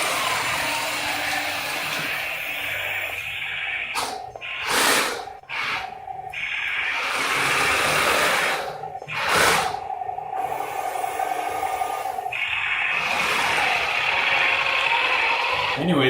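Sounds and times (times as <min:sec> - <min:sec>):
toy tank motors whirring: 0:03.5 - 0:16.0.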